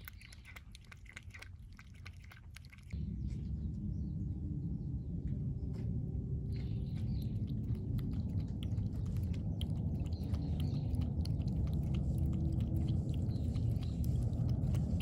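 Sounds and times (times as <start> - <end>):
cat chewing and crunching food: 0.0 - 3.0, 6.5 - 15.0
low background rumble: 0.0 - 15.0.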